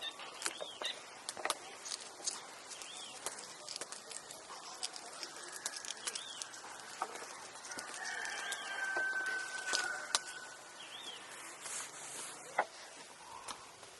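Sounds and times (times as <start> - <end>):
bird chirps: 0.0 - 1.1.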